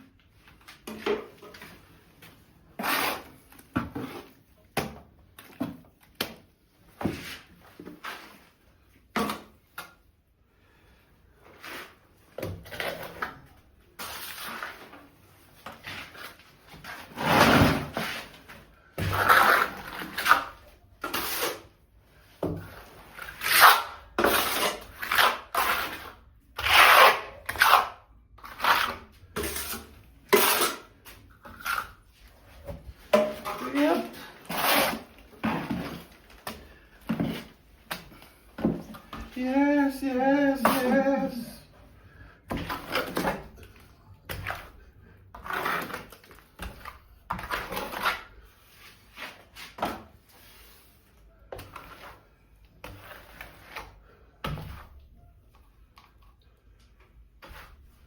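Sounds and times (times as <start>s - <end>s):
trowel scraping wet plaster: 2.8s - 4.6s, 11.5s - 41.6s, 42.4s - 55.6s, 57.4s - 58.0s.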